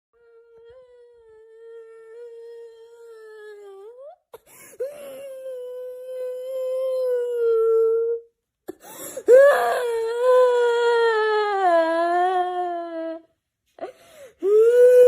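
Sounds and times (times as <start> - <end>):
sobbing breath: 8.7 - 9.9.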